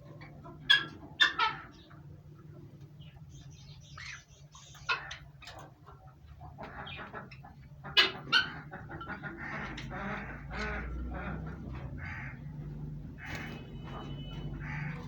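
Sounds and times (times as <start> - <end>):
parrots squawking: 0.2 - 2.0, 3.9 - 5.6, 6.6 - 15.0.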